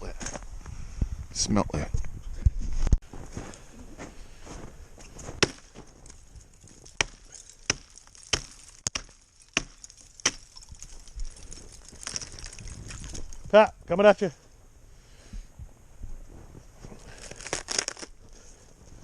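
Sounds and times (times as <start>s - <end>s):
sharp chopping blows: 5.4s - 5.7s, 7.0s - 10.5s.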